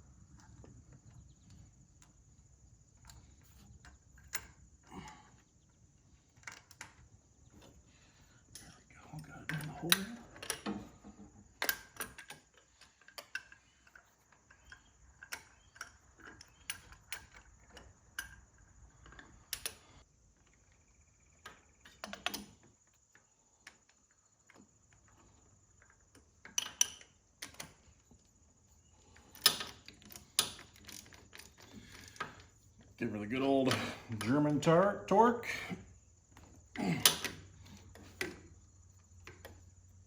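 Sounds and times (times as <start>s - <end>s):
metallic clinks of hand tools: 36.8s - 38.4s.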